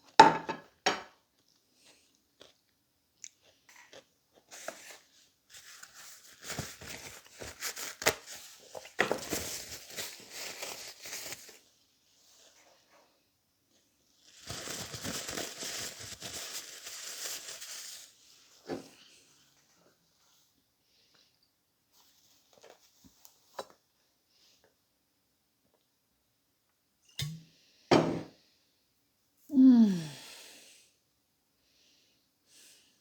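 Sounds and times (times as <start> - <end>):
chewing and crunching food: 1.2 - 5.2.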